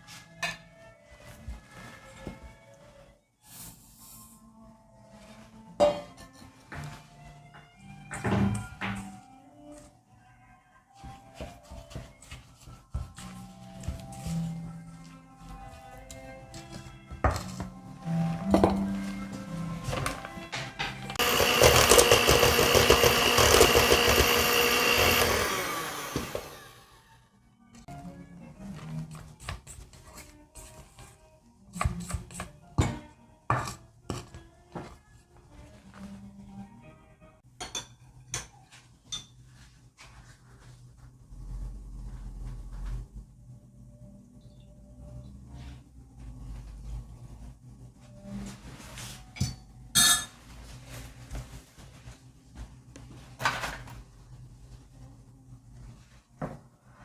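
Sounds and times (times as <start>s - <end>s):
background music: 0.0s - 38.4s
dishes clinking and knocking: 5.8s - 6.4s, 37.6s - 39.4s, 49.4s - 50.4s.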